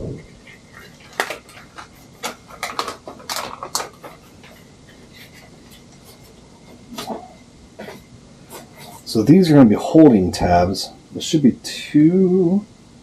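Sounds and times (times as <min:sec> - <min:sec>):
plastic film crinkling: 0:00.4 - 0:07.2.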